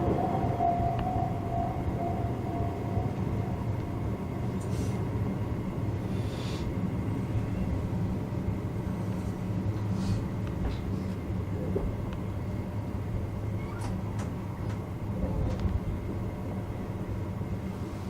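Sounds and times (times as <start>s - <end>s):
thin steady whine: 0.0s - 6.3s
train wheels rumbling: 0.0s - 18.0s.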